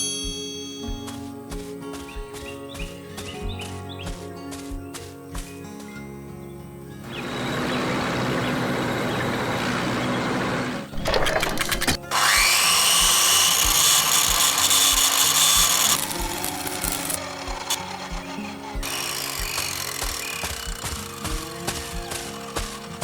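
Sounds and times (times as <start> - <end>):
light background music: 0.0 - 10.1, 10.8 - 23.0
high machine whine: 7.0 - 23.0
machinery grinding: 7.0 - 23.0
sharp clicks: 11.0 - 23.0.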